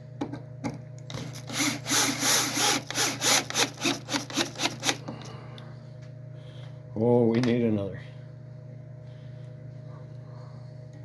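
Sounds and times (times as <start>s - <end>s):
multi-tool blade rasping wood: 1.6s - 5.0s.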